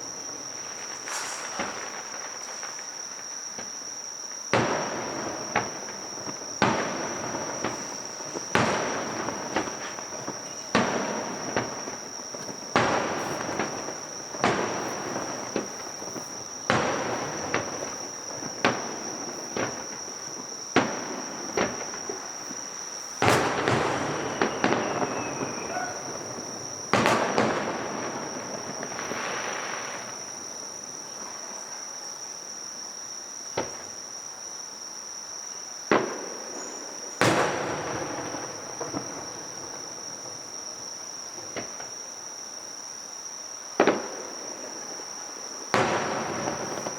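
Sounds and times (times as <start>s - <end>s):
fireworks bursting: 0.0s - 31.8s, 35.9s - 42.1s, 43.8s - 46.9s
fireworks crackling: 0.0s - 31.8s, 35.9s - 42.1s, 43.8s - 46.9s
high-pitched insect trill: 0.0s - 35.9s, 36.5s - 37.3s.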